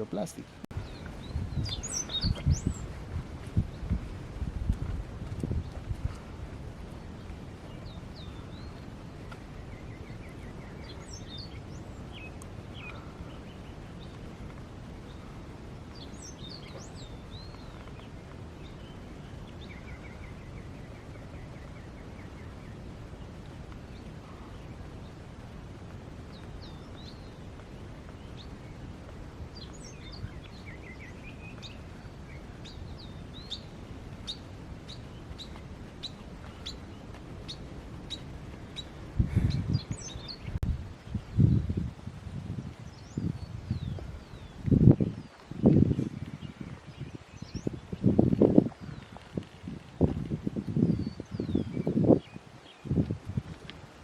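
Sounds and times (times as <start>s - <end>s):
birds chirping and calling: 0.0s - 3.0s, 7.6s - 14.2s, 15.1s - 22.9s, 29.5s - 40.6s
outdoor background noise: 0.0s - 54.0s.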